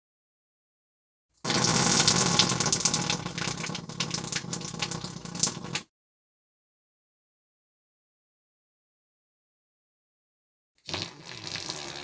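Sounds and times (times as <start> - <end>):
long fart: 10.8 - 12.0.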